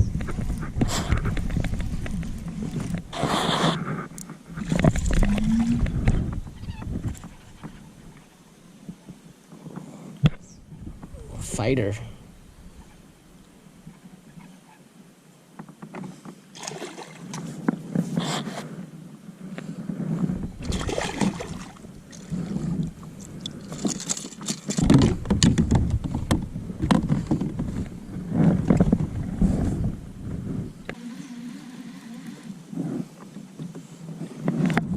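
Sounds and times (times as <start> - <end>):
knocks and scrapes on kayak hull: 0.0 - 7.9, 23.6 - 30.6
water splashing and sloshing: 0.0 - 8.4, 16.5 - 17.8, 20.4 - 29.9.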